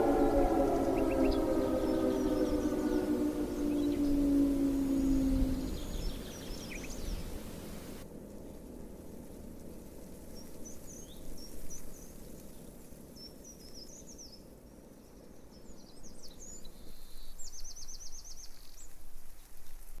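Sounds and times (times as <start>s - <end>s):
small birds chirping: 0.0s - 8.0s
low outdoor rumble: 0.0s - 12.1s.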